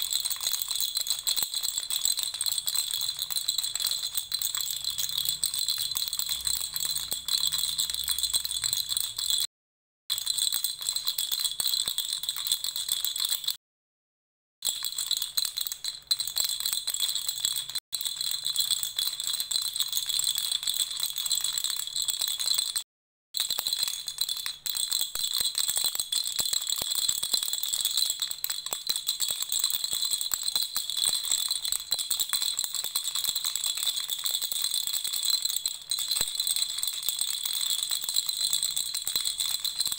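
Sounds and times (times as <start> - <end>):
baby rattle shaking: 0.0 - 9.5, 10.1 - 13.2, 23.4 - 39.9.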